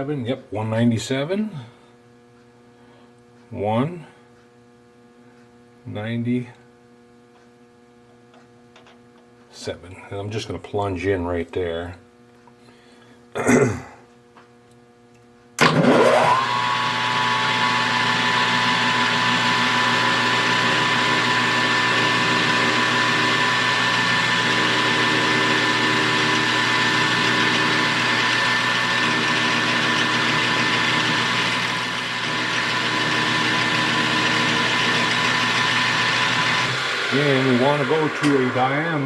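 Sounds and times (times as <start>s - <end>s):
metal lathe motor whining: 15.6s - 39.0s.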